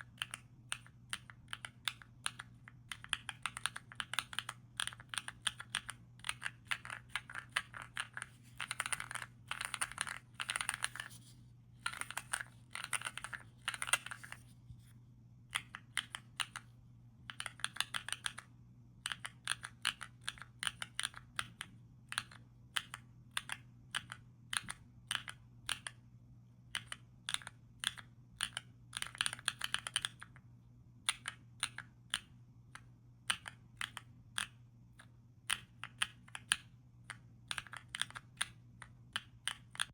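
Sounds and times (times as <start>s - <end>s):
mechanical keyboard typing: 0.0s - 11.2s, 11.8s - 14.4s, 15.5s - 26.0s, 26.7s - 30.4s, 35.5s - 39.9s.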